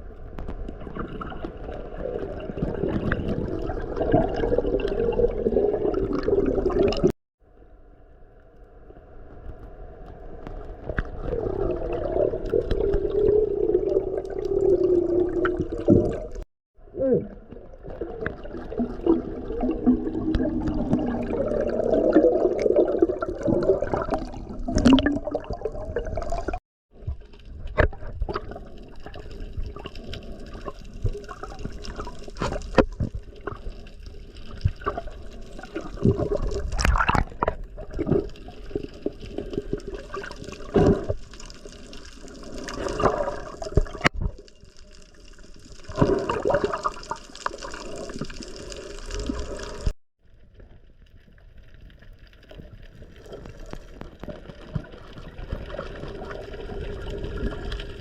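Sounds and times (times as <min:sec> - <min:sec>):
muffled underwater rushing water: 0:00.0 - 0:07.1, 0:08.7 - 0:58.0.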